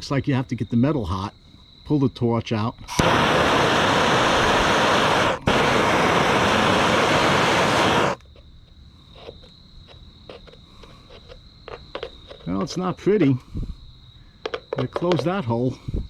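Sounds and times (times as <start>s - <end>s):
propane torch flame hissing: 2.9s - 8.2s.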